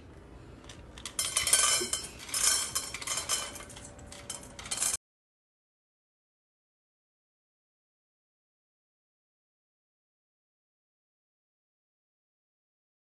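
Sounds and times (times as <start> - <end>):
hard objects clattering: 0.6 - 5.0.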